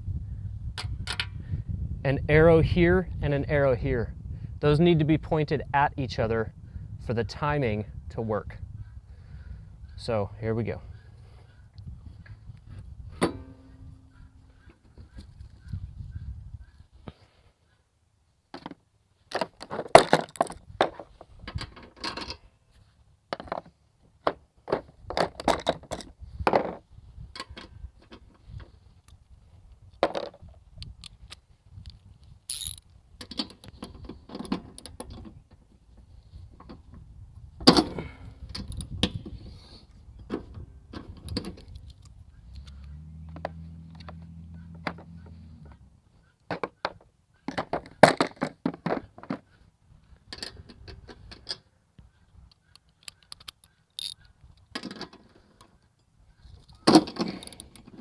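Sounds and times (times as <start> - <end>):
low steady hum: 9.4 - 14.8
metal tools clinking and clanking: 32.5 - 35.0, 54.0 - 55.2, 56.8 - 58.0.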